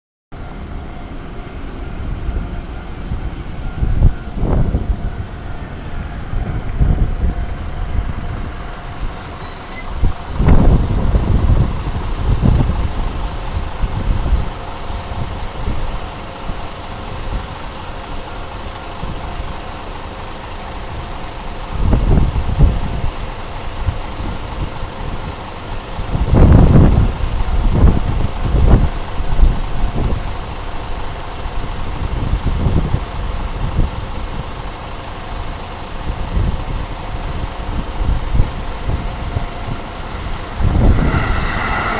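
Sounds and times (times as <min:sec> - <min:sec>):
loud low rumbles: 0:00.3 - 0:17.8, 0:36.0 - 0:41.9
level-crossing alarm ringing: 0:00.4 - 0:08.0.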